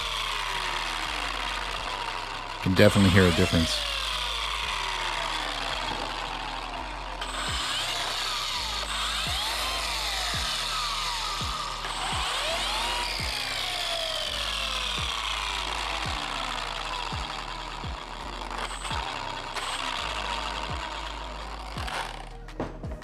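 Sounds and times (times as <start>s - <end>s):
kick drum beat: 0.0s - 0.2s, 7.4s - 7.8s, 10.3s - 10.6s, 11.4s - 12.4s, 13.2s - 13.5s, 15.0s - 15.2s, 16.0s - 16.5s, 17.1s - 18.2s, 18.9s - 19.3s, 20.7s - 21.0s, 21.8s - 23.0s
electronic music: 0.0s - 23.0s.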